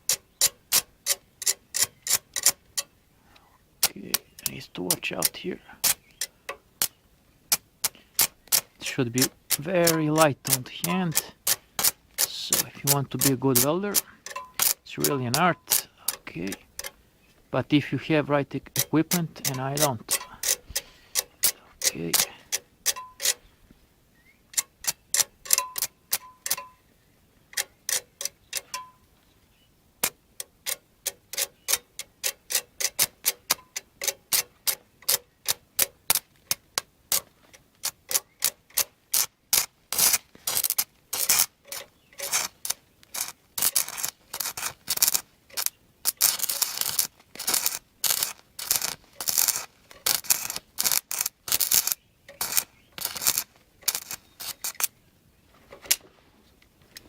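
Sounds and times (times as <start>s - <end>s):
welding arc crackling: 6.8s - 17.0s, 17.8s - 23.4s, 30.0s - 54.9s.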